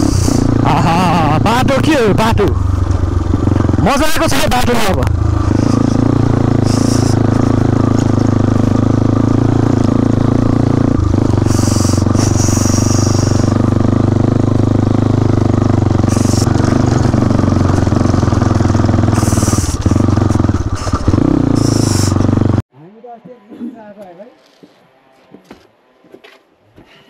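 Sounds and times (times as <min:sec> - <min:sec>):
short hissing bursts: 0:00.0 - 0:00.6, 0:06.6 - 0:07.2, 0:11.4 - 0:13.5, 0:19.2 - 0:19.8, 0:21.6 - 0:22.2
motorcycle engine running: 0:00.0 - 0:22.6.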